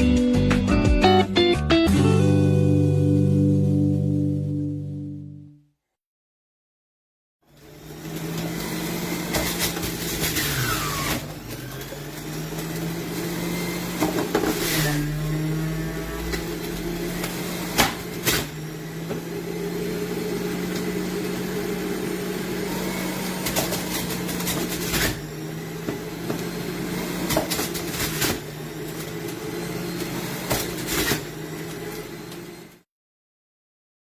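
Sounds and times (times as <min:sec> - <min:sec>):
juicer motor humming: 0:07.4 - 0:32.8
juicer clicks and knocks: 0:14.0 - 0:14.7.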